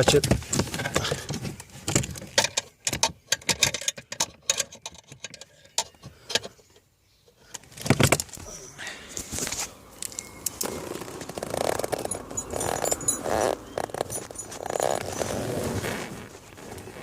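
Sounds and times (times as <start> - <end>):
metal hand tools clinking: 11.9 - 15.3.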